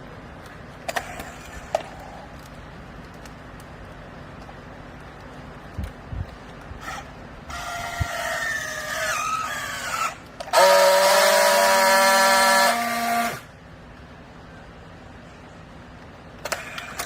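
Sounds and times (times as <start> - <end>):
hydraulic baler whine: 6.8 - 13.6.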